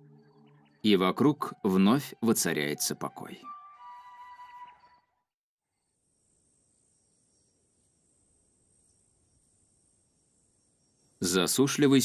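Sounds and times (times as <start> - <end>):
insect chirring: 5.8 - 11.7.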